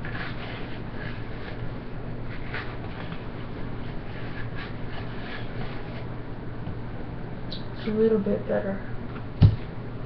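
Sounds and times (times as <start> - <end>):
paper towel wiping plastic lens: 0.0 - 6.1
steady low hum: 0.0 - 10.0.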